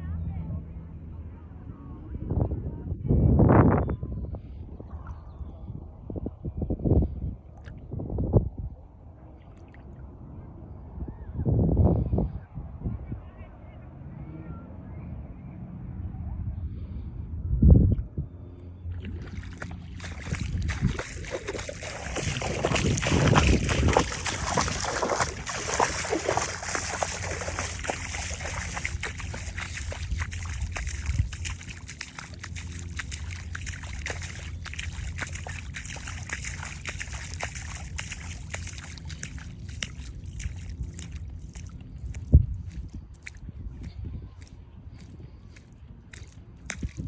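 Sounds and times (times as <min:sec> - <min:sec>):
steady low rumble: 0:00.0 - 0:09.4, 0:14.2 - 0:47.0
seawater sloshing and lapping: 0:18.9 - 0:47.0
small clicks and splashes: 0:18.9 - 0:47.0.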